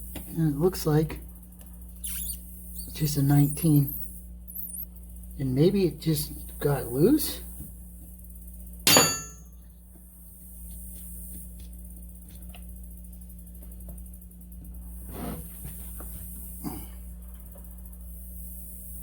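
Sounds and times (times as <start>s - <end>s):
steady low hum: 0.0s - 19.0s
metal tool striking: 8.9s - 9.5s.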